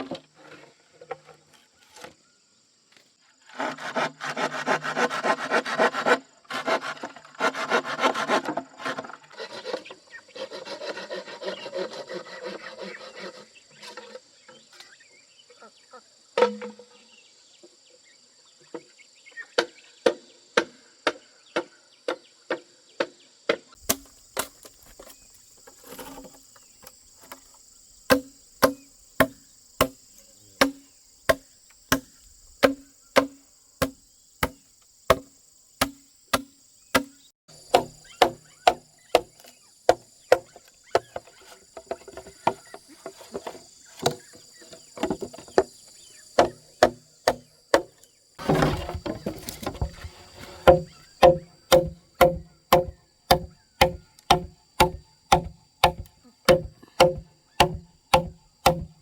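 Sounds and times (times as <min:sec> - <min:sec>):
axe chopping wood: 0:23.8 - 0:25.0, 0:28.1 - 0:30.0, 0:30.6 - 0:41.1, 0:46.4 - 0:59.0
insects buzzing: 0:23.8 - 0:59.0.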